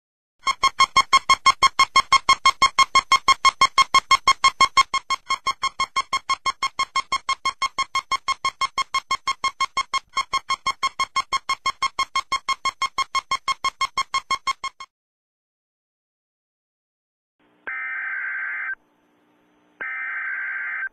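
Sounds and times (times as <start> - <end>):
rapid electronic beeping: 0.4 - 14.9, 17.7 - 18.8, 19.8 - 20.9.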